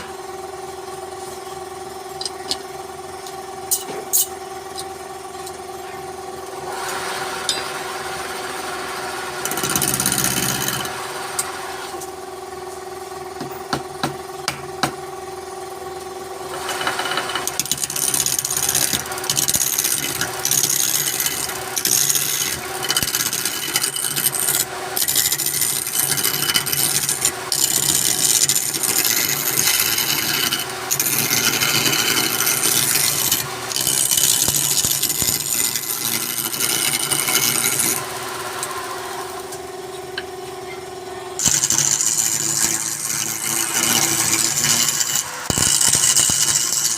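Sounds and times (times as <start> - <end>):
wood lathe humming: 6.6 - 12.0, 16.4 - 40.3, 41.3 - 46.9
turning tool scraping wood: 9.4 - 11.5, 16.5 - 39.3, 41.4 - 46.9.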